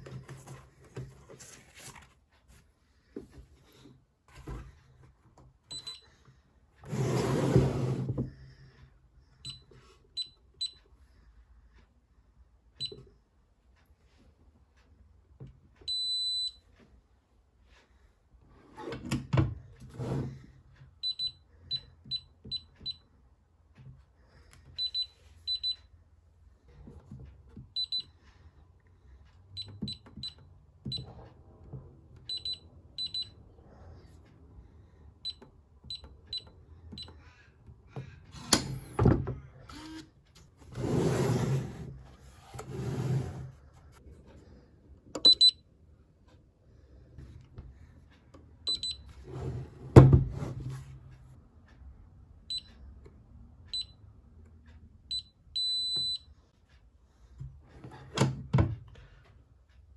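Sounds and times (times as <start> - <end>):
rustling scrape: 0.2 - 2.7, 40.6 - 44.0
keypad beeping: 45.2 - 45.6, 48.7 - 49.1, 55.1 - 56.3.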